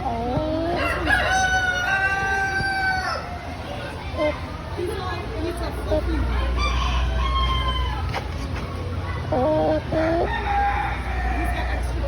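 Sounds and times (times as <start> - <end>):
chickens clucking: 0.0 - 5.1, 5.7 - 12.0.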